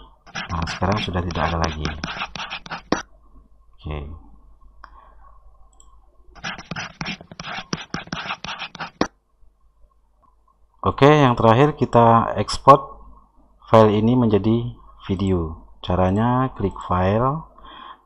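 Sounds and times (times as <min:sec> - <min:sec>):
pen scratching on paper: 0:00.3 - 0:03.0, 0:06.4 - 0:09.1.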